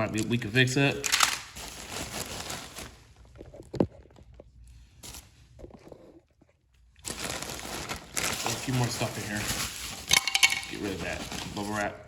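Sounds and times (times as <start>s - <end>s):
packaging rustling: 0.0s - 4.1s, 7.0s - 12.0s.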